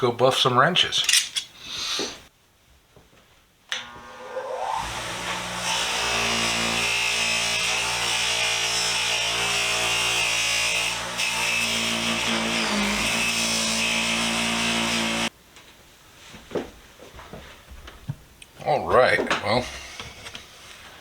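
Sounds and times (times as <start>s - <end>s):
buffer motor whining: 3.7s - 5.4s.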